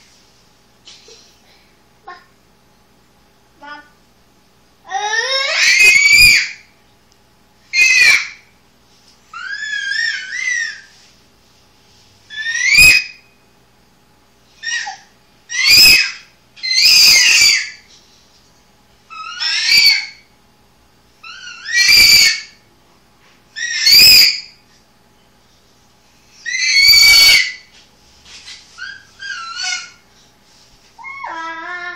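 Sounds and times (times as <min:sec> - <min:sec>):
shrill piercing squeals: 0:05.5 - 0:06.6, 0:07.7 - 0:08.4, 0:09.3 - 0:10.9, 0:12.3 - 0:13.2, 0:14.6 - 0:17.8, 0:19.1 - 0:20.2, 0:21.2 - 0:22.6, 0:23.6 - 0:24.6, 0:26.4 - 0:27.7, 0:28.8 - 0:30.0.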